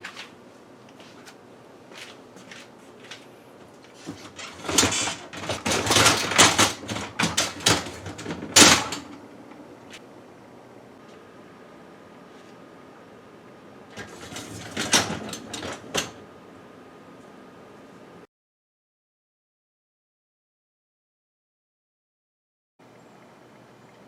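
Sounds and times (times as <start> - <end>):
dishwasher rack clattering: 4.0 - 9.2, 14.0 - 16.2
dishwasher rack clicks: 4.0 - 9.2, 14.0 - 16.2.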